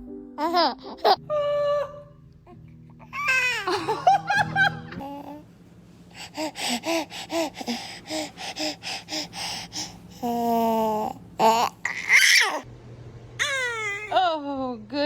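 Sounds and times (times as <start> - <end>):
baby girl giggling: 3.1 - 5.4
baby girl squealing: 11.4 - 12.6, 13.4 - 14.2.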